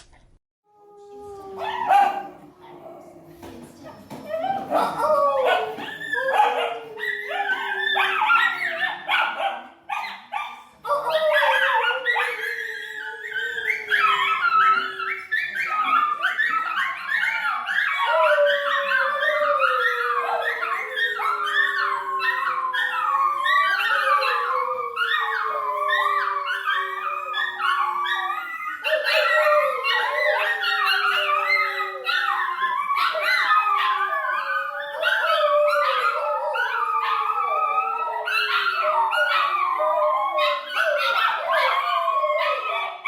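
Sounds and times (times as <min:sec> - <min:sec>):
dogs howling: 0:00.7 - 0:10.0, 0:10.9 - 0:43.0.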